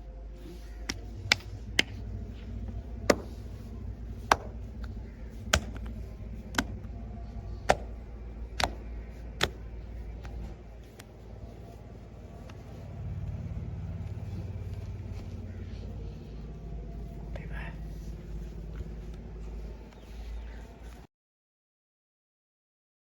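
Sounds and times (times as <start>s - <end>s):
low steady hum: 0.0s - 21.1s
joint cracks: 0.8s - 11.7s, 12.3s - 15.6s.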